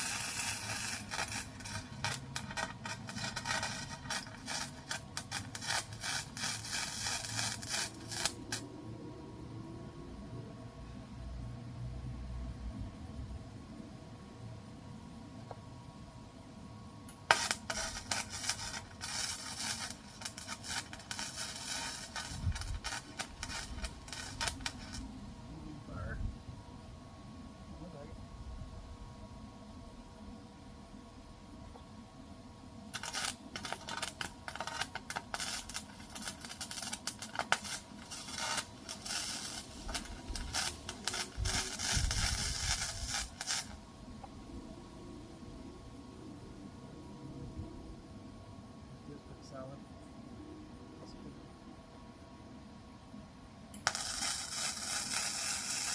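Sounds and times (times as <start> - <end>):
harsh scraping on metal: 0.0 - 8.6, 17.3 - 25.0
arc welding crackle: 0.0 - 8.8, 17.1 - 25.2, 32.9 - 43.9, 53.7 - 55.9.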